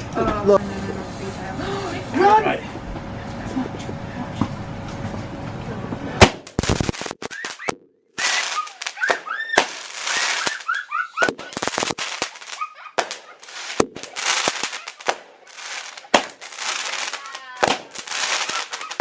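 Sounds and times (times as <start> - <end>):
firework cake bangs and pops: 6.2 - 19.0
firework whistling: 6.2 - 19.0.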